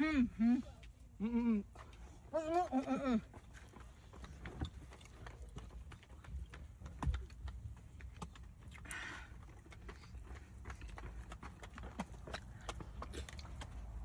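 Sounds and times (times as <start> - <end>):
chewing clicks and taps: 3.2 - 14.0.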